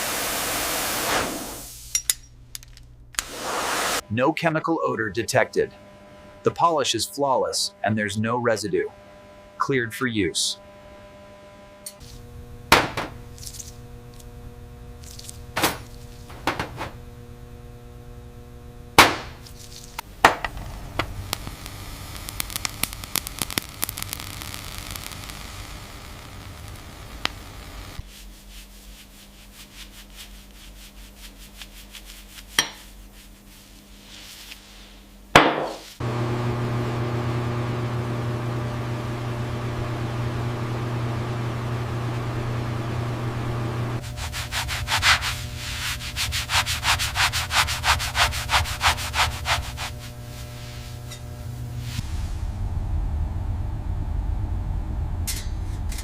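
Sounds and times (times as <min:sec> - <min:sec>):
low hum: 0:10.6 - 0:28.0, 0:36.0 - 0:56.0
sharp knocks of hard objects: 0:12.7 - 0:13.2, 0:19.0 - 0:19.4, 0:35.4 - 0:35.8
steady rubbing noise: 0:26.4 - 0:35.2, 0:43.8 - 0:52.6.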